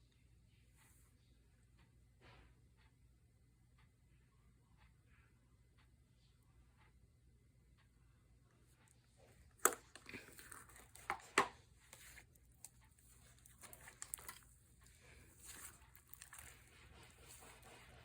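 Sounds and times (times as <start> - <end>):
slime squishing by hand: 9.4 - 18.0.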